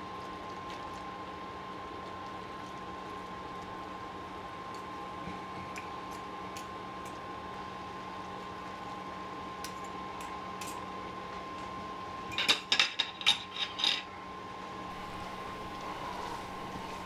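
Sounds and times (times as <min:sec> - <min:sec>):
steady hum: 0:14.9 - 0:17.0.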